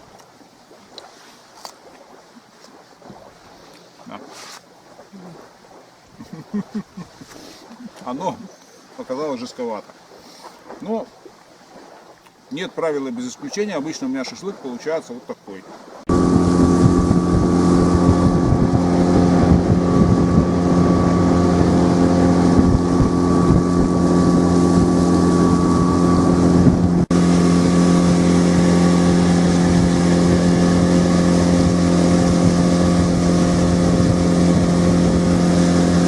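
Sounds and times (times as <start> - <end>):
wind buffeting microphone: 15.7 - 36.0
outboard motor running: 16.0 - 36.0.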